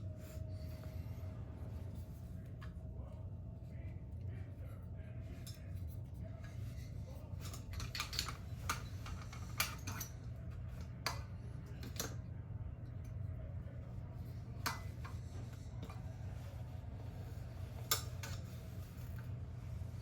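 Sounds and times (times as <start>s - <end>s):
steady low hum: 0.0s - 20.0s
light fixture parts clicking: 7.4s - 12.2s.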